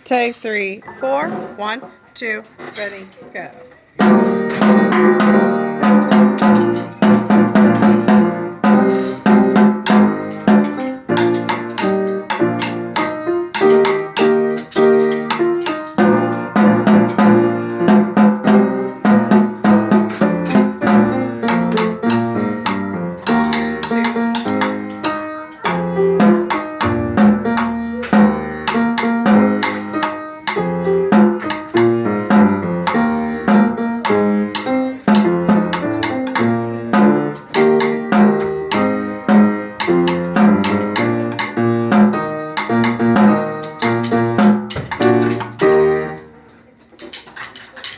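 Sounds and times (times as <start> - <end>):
piano: 3.7 - 47.9
plucked strings: 4.0 - 46.0
snare drum strokes: 4.0 - 46.1.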